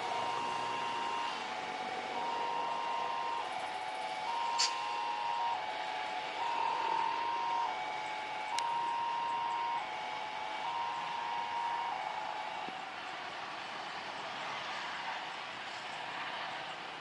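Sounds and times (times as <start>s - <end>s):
two-tone warning signal: 0.0s - 12.7s.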